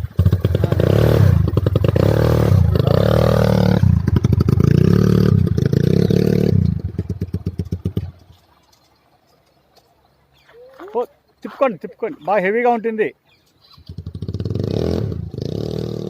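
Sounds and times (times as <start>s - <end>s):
atv engine running: 0.0s - 8.5s, 13.3s - 16.0s.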